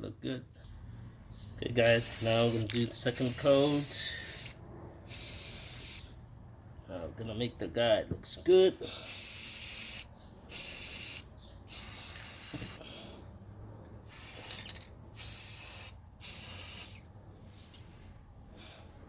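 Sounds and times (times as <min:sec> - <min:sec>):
spray paint can spraying: 0:01.8 - 0:06.0, 0:09.0 - 0:12.8, 0:14.1 - 0:17.0.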